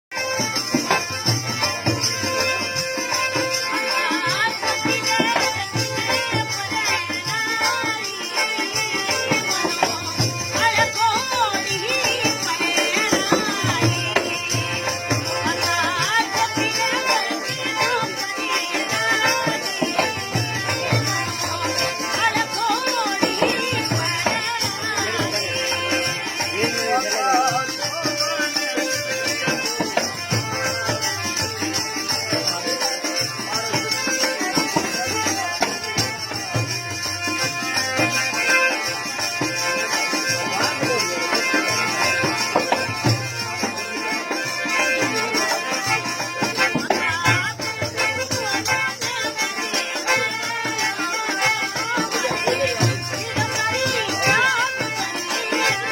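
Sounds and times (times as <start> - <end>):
folk melody: 0.1 - 55.9.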